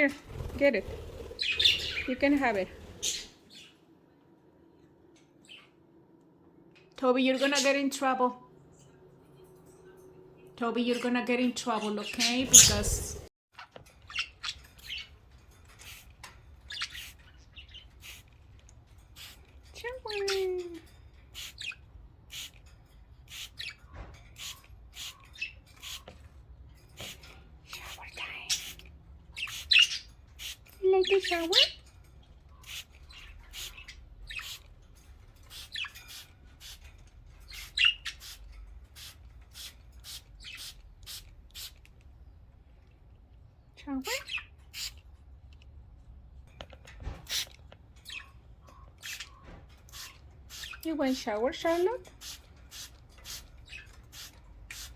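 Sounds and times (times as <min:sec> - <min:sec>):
budgerigars chirping and squawking: 0:00.2 - 0:03.7, 0:10.9 - 0:13.2, 0:14.0 - 0:18.3, 0:19.2 - 0:22.6, 0:23.3 - 0:23.8, 0:24.4 - 0:26.1, 0:26.9 - 0:32.0, 0:32.6 - 0:41.8, 0:44.0 - 0:45.0, 0:47.2 - 0:54.9
budgerigars chirping: 0:01.1 - 0:03.7, 0:11.8 - 0:13.2, 0:29.4 - 0:31.8, 0:37.5 - 0:38.4.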